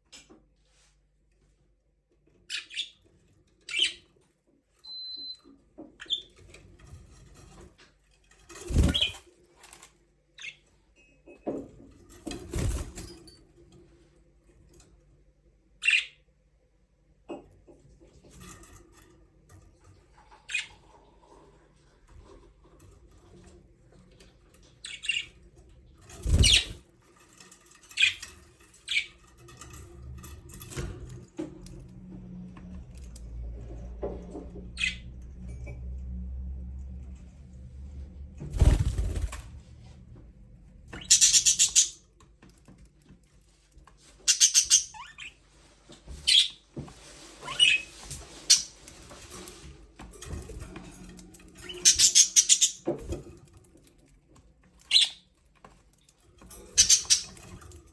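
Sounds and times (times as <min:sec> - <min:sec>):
wings flapping: 0:08.6 - 0:09.2, 0:26.1 - 0:26.9, 0:38.5 - 0:39.6.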